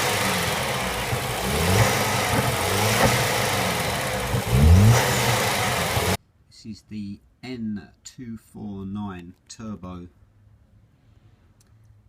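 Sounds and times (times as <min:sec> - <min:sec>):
turbocharged engine running: 0:00.0 - 0:06.2.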